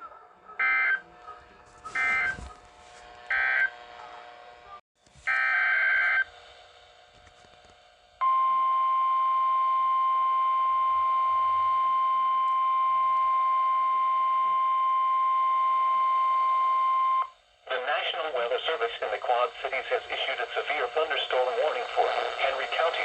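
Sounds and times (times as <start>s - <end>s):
steady warning alarm tone: 0.5s - 2.5s, 3.3s - 3.9s, 5.3s - 6.4s, 8.2s - 17.4s.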